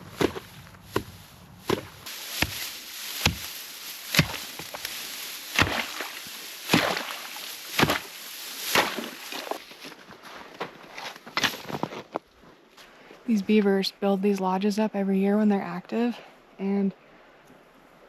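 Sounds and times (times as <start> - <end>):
ice pick striking ice: 1.7 - 9.6.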